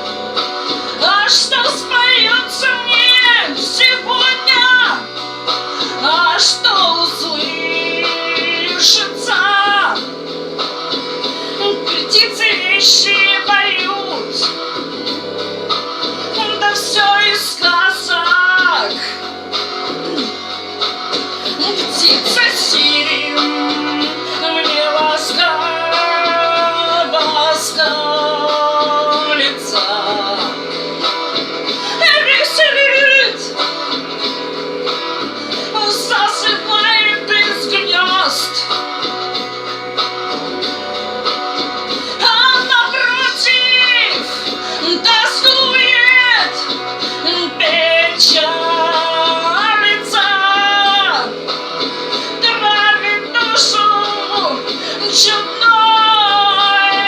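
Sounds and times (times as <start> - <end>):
instrumental backing: 0.0 - 57.0
woman singing slow song: 1.0 - 5.2, 5.9 - 10.0, 11.6 - 14.6, 16.3 - 19.2, 21.6 - 30.7, 31.8 - 33.6, 35.7 - 38.8, 42.1 - 51.4, 52.4 - 57.0.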